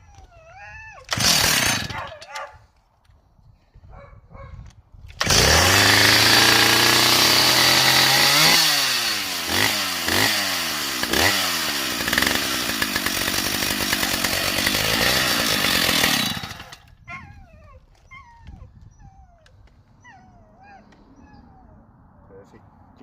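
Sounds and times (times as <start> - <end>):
chainsaw starting and revving: 1.1 - 2.1, 5.1 - 16.9.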